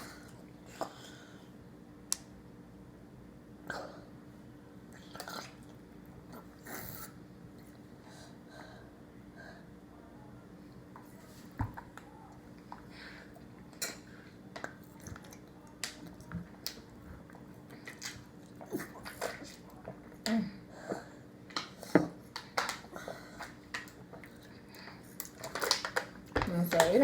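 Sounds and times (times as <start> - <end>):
faint low hum: 0.0 - 27.0
chewing and mouth smacks: 14.6 - 20.2.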